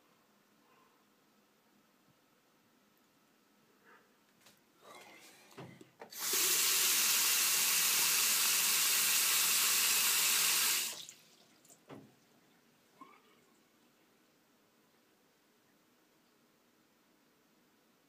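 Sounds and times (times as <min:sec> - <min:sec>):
water rushing through pipes: 0:06.1 - 0:11.9.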